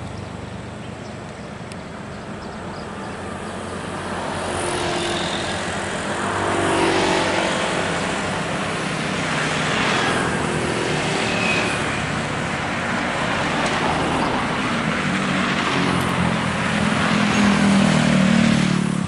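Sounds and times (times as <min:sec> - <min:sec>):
road traffic passing: 0:00.0 - 0:19.0
vehicle engine: 0:00.0 - 0:19.0.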